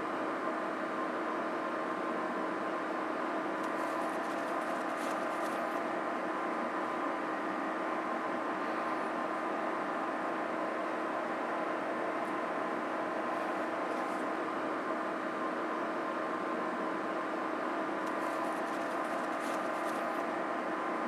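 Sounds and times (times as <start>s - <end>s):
vacuum cleaner fans whirring: 0.0s - 21.0s.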